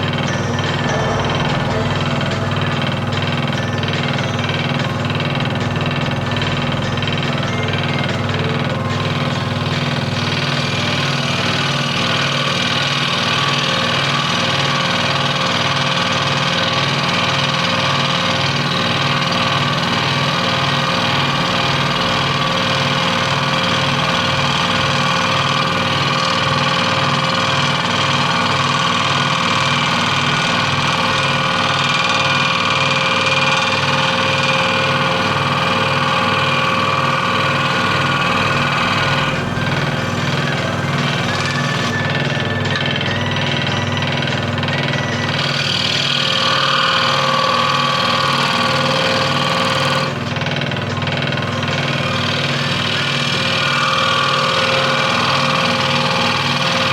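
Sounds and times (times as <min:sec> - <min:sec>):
scroll saw cutting wood: 0:44.8 - 0:50.3, 0:51.2 - 0:56.9.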